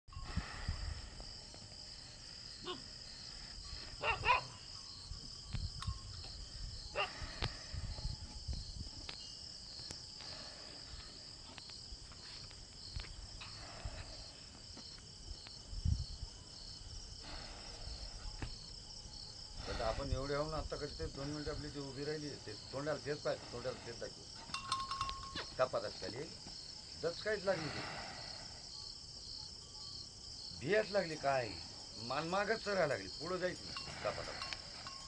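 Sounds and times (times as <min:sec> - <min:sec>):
crickets chirping: 0:00.1 - 0:35.0.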